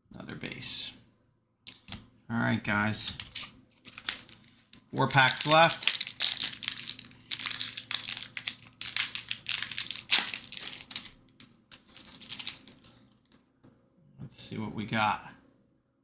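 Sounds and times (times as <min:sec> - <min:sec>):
foil wrapper crinkling and tearing: 0:02.9 - 0:13.4.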